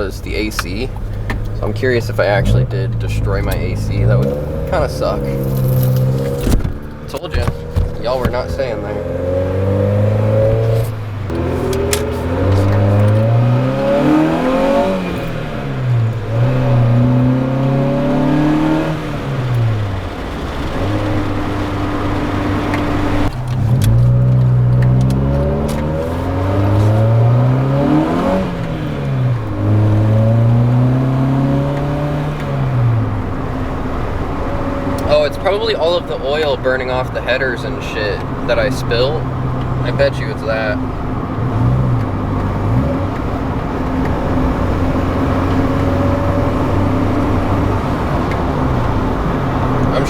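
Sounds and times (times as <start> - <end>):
car engine accelerating through gears: 0.0 - 50.0.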